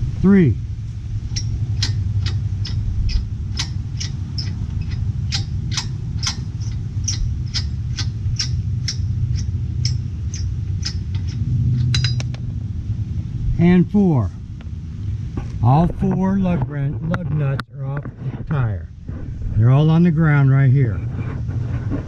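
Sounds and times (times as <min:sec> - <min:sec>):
steady low rumble: 0:00.0 - 0:22.0
lug nut clicking: 0:01.3 - 0:12.4
metallic clink: 0:01.3 - 0:12.4.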